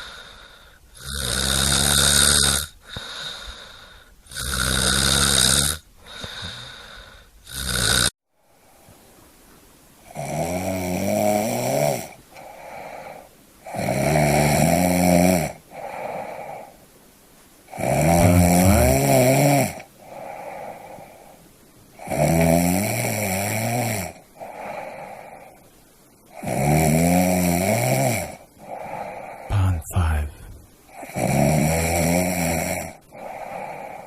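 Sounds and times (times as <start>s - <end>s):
quiet breath sounds: 0.0s - 1.1s, 2.7s - 4.4s, 5.9s - 7.5s, 8.3s - 10.2s, 11.7s - 14.6s, 15.5s - 22.3s, 23.1s - 26.5s, 27.6s - 34.0s
loud snoring: 1.0s - 3.4s, 4.3s - 8.1s, 10.1s - 12.1s, 13.7s - 15.6s, 17.7s - 19.9s, 22.0s - 24.2s, 26.3s - 28.4s, 31.0s - 33.0s.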